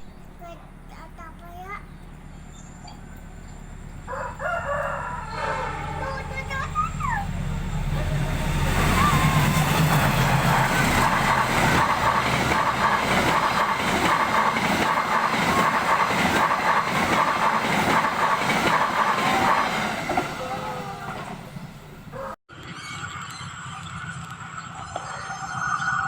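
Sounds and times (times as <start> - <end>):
train wheels clacking: 4.7 - 22.4.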